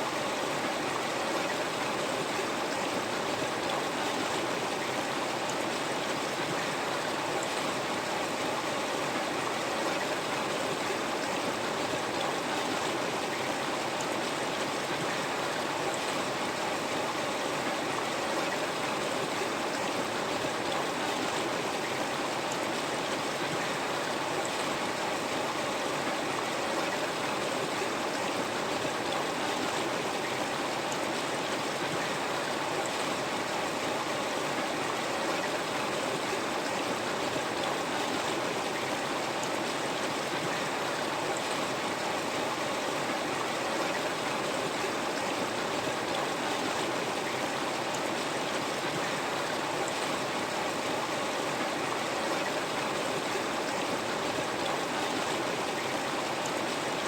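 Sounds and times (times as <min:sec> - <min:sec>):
river flowing over stones: 0:00.0 - 0:57.0.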